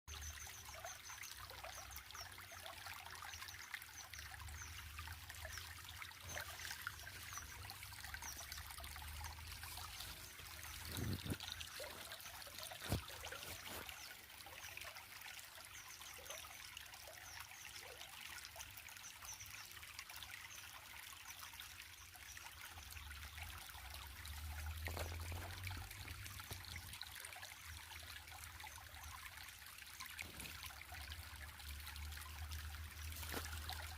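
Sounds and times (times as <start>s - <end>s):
water trickling: 0.1s - 33.9s.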